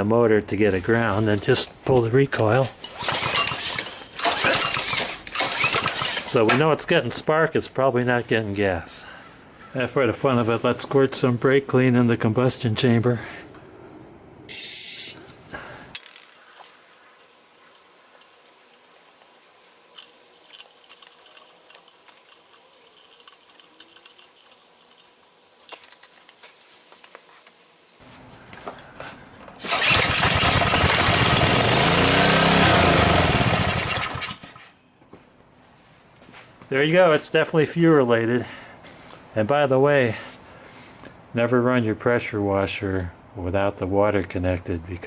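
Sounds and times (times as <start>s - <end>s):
small engine running: 2.9s - 6.3s, 29.6s - 34.6s.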